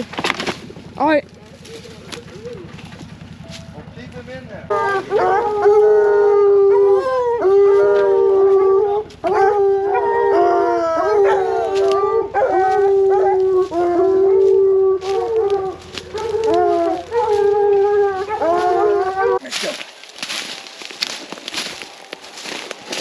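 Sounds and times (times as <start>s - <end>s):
hounds howling: 4.6s - 23.0s.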